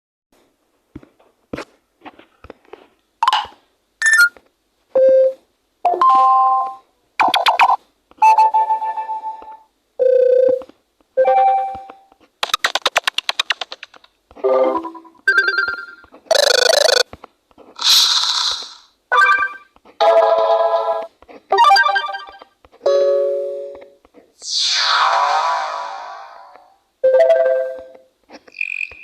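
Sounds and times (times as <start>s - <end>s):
fast repeated beeps: 4.0s - 4.4s, 14.7s - 17.0s
notification chimes and beeps: 4.0s - 4.4s, 5.0s - 6.8s, 14.5s - 17.0s, 27.0s - 28.0s.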